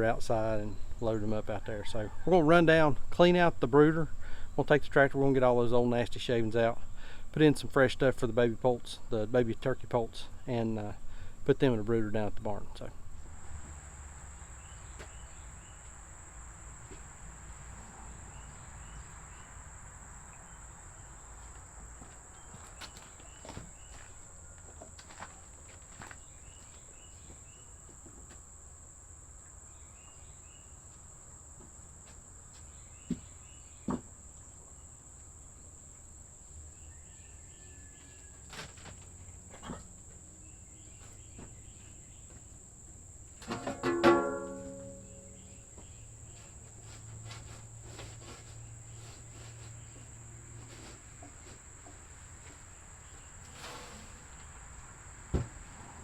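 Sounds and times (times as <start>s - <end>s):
crickets droning: 12.8s - 56.0s
sharp knocks: 43.4s - 45.3s.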